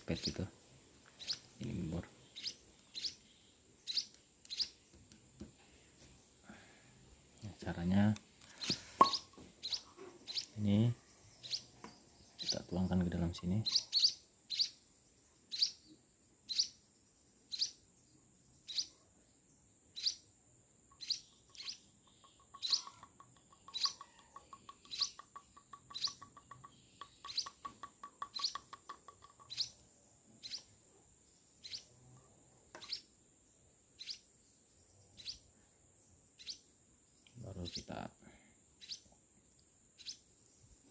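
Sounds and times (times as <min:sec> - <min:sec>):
bird chick chirping: 0:01.1 - 0:04.9, 0:08.6 - 0:14.8, 0:15.5 - 0:15.8, 0:16.4 - 0:16.8, 0:17.5 - 0:17.8, 0:18.6 - 0:19.0, 0:19.9 - 0:20.3, 0:20.9 - 0:29.8, 0:30.4 - 0:30.8, 0:31.6 - 0:33.1, 0:34.0 - 0:34.3, 0:35.1 - 0:35.5, 0:36.3 - 0:36.7, 0:38.8 - 0:39.1, 0:40.0 - 0:40.3.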